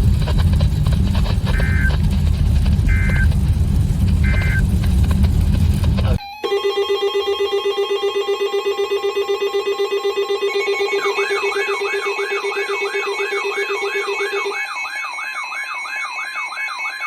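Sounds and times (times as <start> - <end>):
low vehicle rumble: 0.0 - 6.2
rapidly pulsing electronic alert tone: 0.0 - 17.0
warbling tone: 0.0 - 17.0.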